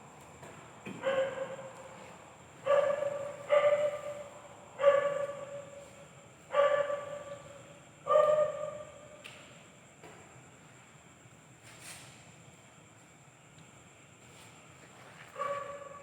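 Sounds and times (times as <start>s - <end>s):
dog barking: 1.0s - 1.7s, 2.6s - 5.6s, 6.5s - 7.4s, 8.1s - 8.9s, 15.3s - 16.0s.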